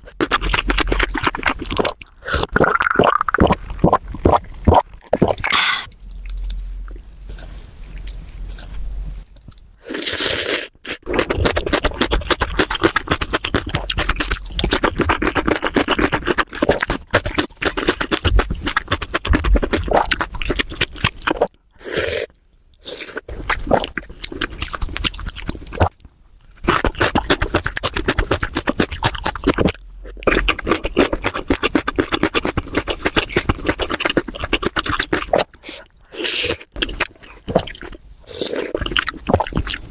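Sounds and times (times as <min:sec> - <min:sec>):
crunchy chewing: 0:07.2 - 0:21.6, 0:22.8 - 0:39.9.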